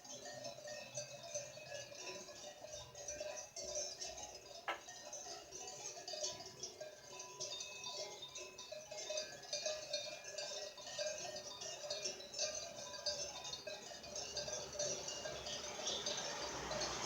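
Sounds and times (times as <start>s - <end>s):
cowbells ringing: 0.0s - 17.0s.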